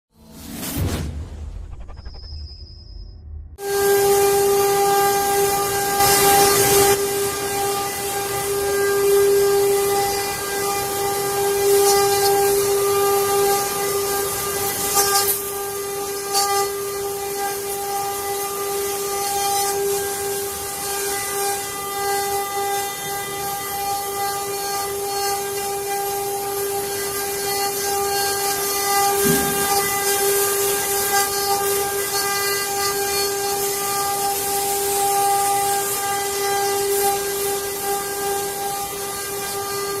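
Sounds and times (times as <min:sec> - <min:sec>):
router spindle whine: 0:03.6 - 0:40.0.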